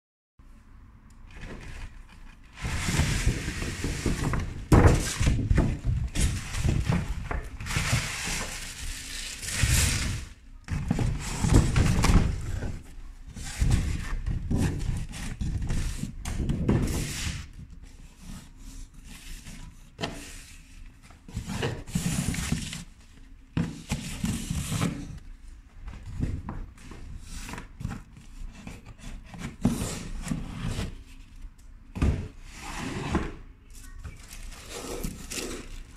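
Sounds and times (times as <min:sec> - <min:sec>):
paper and bag rustling: 0:33.8 - 0:35.9.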